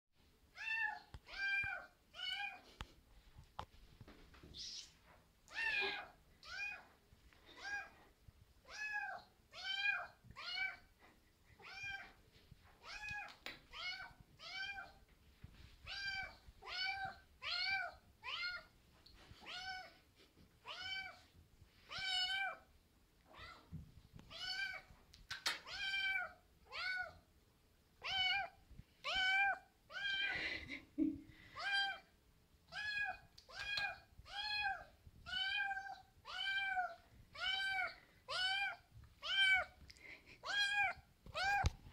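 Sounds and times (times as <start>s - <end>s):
kitten meowing: 32.7s - 39.7s.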